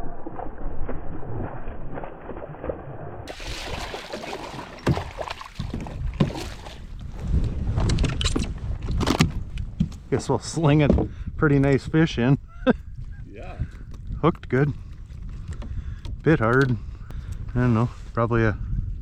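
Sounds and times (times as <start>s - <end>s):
water sloshing and splashing: 0.3s - 9.3s
wind on microphone: 3.3s - 19.0s.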